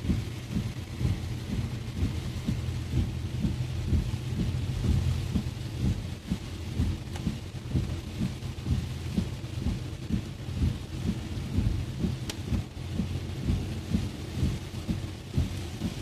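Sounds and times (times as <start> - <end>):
heavy rain on a car: 0.0 - 16.0.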